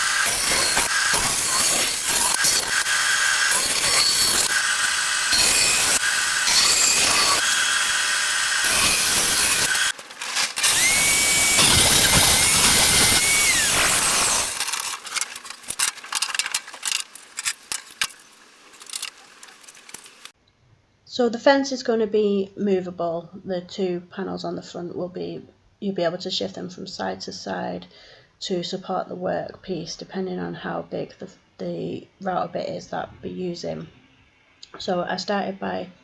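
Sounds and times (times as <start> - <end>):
motor whine: 0.0 - 20.3
power tools cutting wood: 0.0 - 20.3.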